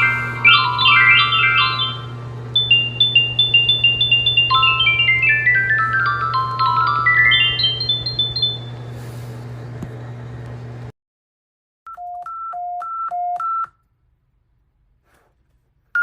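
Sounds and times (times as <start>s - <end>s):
electronic alert chimes: 0.0s - 8.8s
steady low hum: 0.0s - 10.9s.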